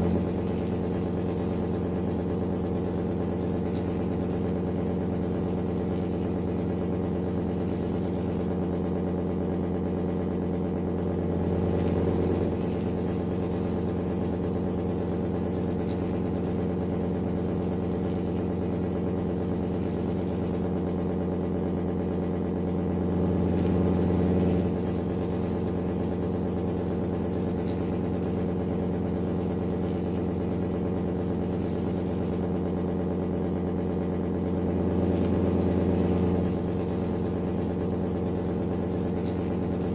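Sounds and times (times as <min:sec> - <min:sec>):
steady engine drone: 0:00.0 - 0:39.9.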